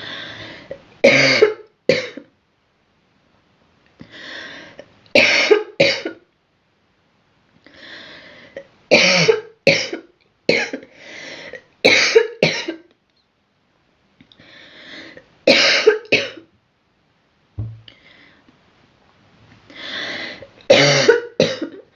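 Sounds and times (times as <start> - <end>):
quiet breaths: 0.0 - 0.9, 3.9 - 5.0, 7.6 - 8.8, 10.8 - 11.7, 14.2 - 15.4, 17.9 - 18.6, 19.5 - 20.7
girl coughing: 1.1 - 2.2, 5.2 - 6.2, 8.9 - 10.8, 11.9 - 12.8, 15.5 - 16.4, 20.7 - 21.8.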